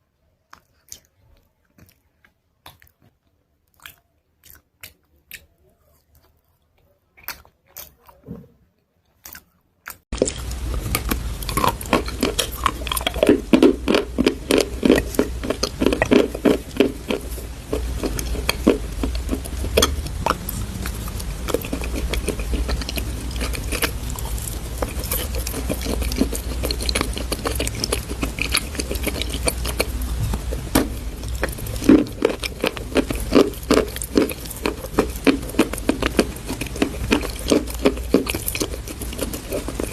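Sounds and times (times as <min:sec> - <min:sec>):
chalk paste crunching: 0:10.1 - 0:39.9
steady low hum: 0:10.1 - 0:39.9.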